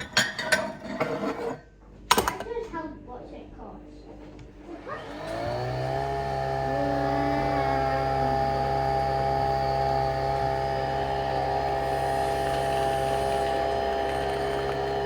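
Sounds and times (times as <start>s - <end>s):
coffee machine motor whirring: 4.6s - 15.0s.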